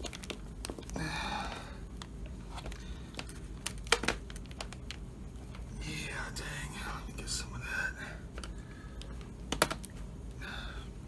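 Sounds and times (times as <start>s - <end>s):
plastic keyboard clicks and creaks: 2.0s - 5.0s.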